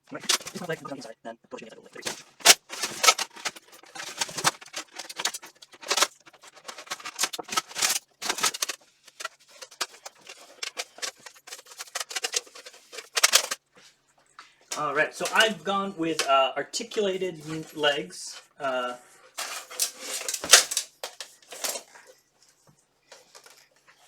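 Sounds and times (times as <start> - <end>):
armour plates clicking and knocking: 0.2 - 0.8, 2.0 - 13.6.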